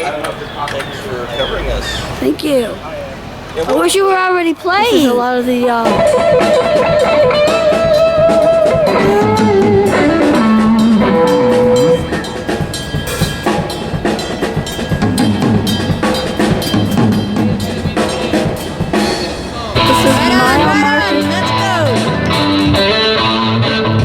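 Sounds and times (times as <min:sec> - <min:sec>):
electric guitar lead: 0:05.6 - 0:24.0
drum kit hits: 0:05.8 - 0:24.0.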